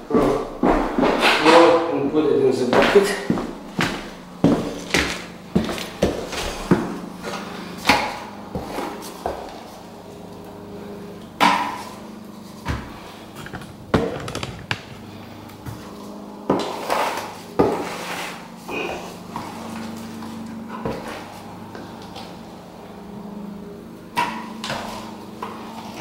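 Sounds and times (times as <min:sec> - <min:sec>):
wooden knocks and clatter: 0:12.7 - 0:15.0.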